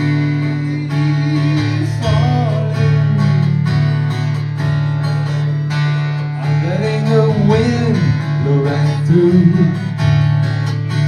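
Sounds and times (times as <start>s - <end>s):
man singing: 0.0s - 3.9s, 6.4s - 10.0s
strummed acoustic guitar: 0.0s - 11.0s.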